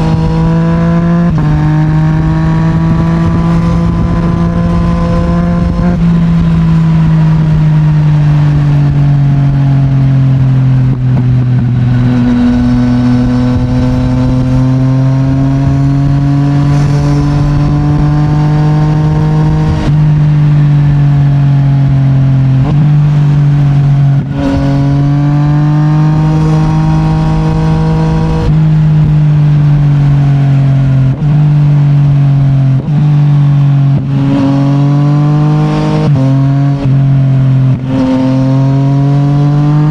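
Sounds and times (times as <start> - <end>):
motorcycle engine pulling: 13.8 - 20.0.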